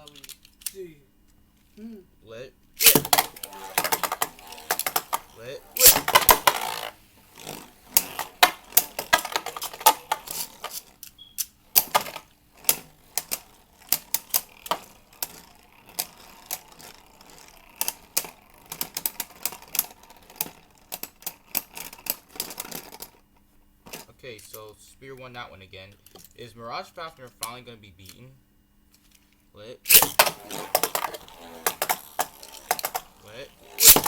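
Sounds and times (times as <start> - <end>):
plastic clicks and clacks: 0.0 - 1.4, 2.8 - 24.6, 29.9 - 34.0
spinning tops clashing: 2.8 - 23.2, 29.9 - 34.0.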